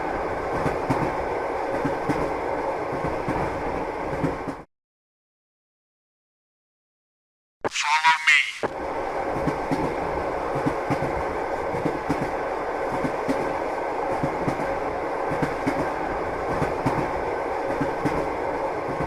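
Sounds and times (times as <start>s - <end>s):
train rumbling: 0.0s - 4.7s, 8.7s - 19.0s.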